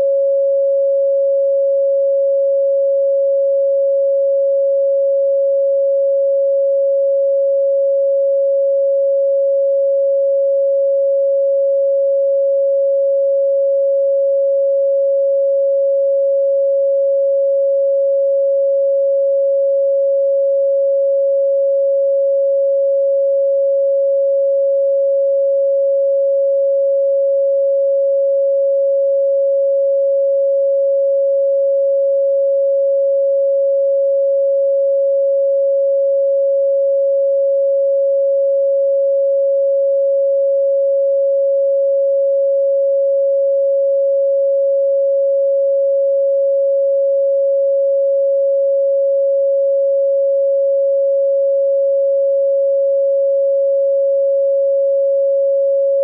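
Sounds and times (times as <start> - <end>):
faint high-pitched whistle: 0.0 - 36.0
electronic sine tone: 0.0 - 56.0.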